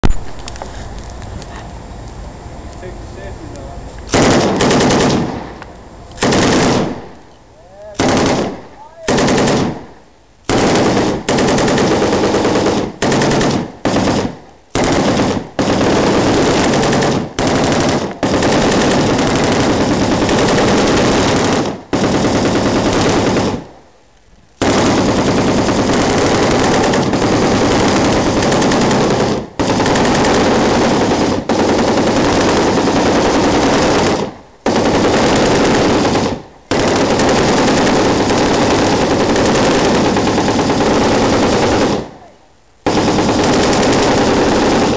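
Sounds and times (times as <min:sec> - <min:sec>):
machine gun firing bursts: 0:04.1 - 0:05.5, 0:06.2 - 0:07.1, 0:08.0 - 0:09.9, 0:10.5 - 0:23.7, 0:24.6 - 0:42.2, 0:42.8 - 0:44.9.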